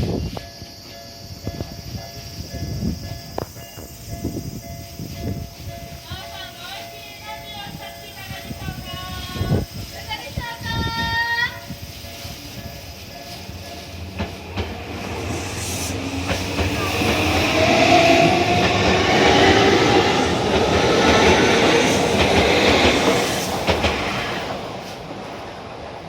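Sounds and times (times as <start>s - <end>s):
electric train passing: 0.0s - 26.0s
wheel clacks over rail joints: 20.4s - 24.7s.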